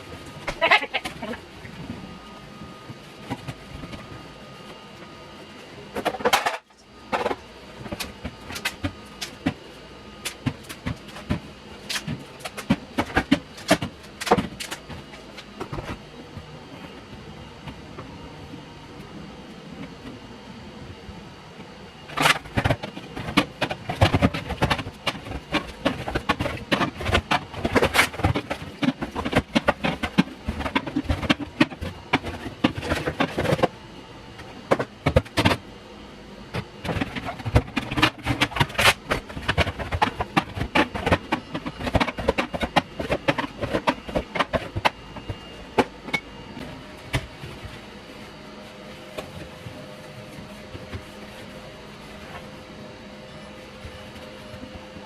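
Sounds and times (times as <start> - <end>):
faint steady hum: 0.0 - 55.0
hard objects clattering: 22.1 - 33.8, 36.5 - 46.3.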